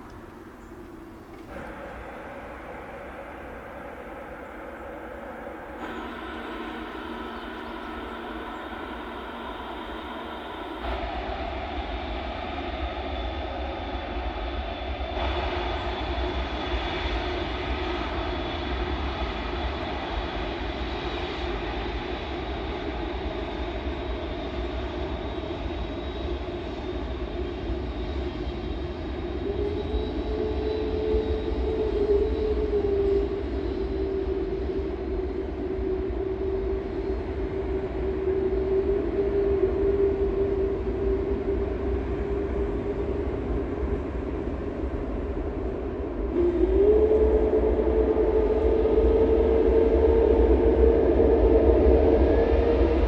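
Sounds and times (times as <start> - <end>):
jet engines whining and rumbling: 0.0 - 53.0.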